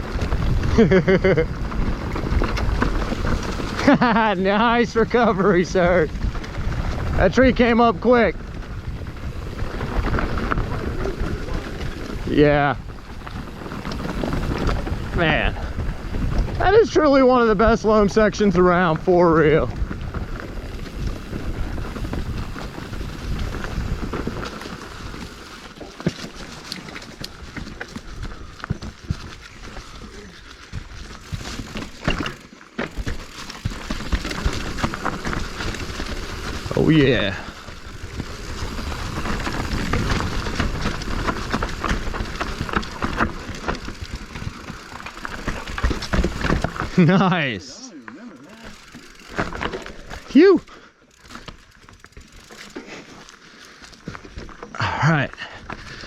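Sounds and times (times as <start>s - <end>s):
wind rumbling on microphone: 0.0s - 25.6s, 33.7s - 47.0s
bike clicks and rattles: 0.0s - 56.0s
bike tyres rolling over dirt: 0.0s - 56.0s.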